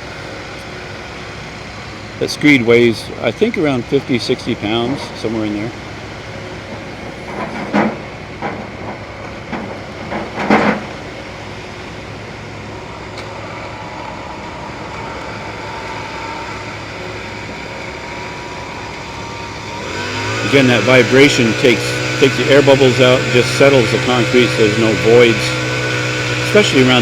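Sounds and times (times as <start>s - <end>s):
vibrating power screed running: 10.8s - 27.0s.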